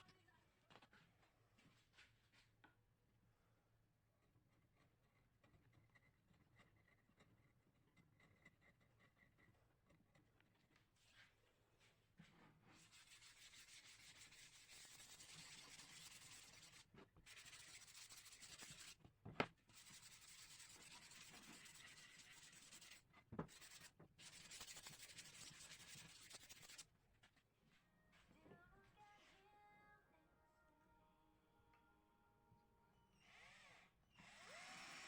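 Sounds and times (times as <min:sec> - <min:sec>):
sandpaper rubbing on wood: 0:12.8 - 0:19.0, 0:19.7 - 0:26.8.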